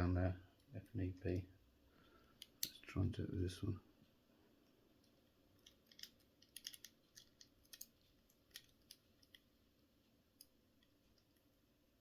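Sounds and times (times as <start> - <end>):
lock pick metallic clicks: 5.6 - 9.4.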